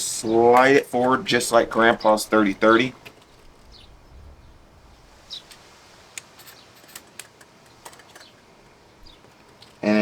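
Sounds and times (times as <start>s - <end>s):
bird chirps: 3.2s - 5.6s, 7.7s - 9.3s
faint clicks of cartridges handled: 5.5s - 8.4s.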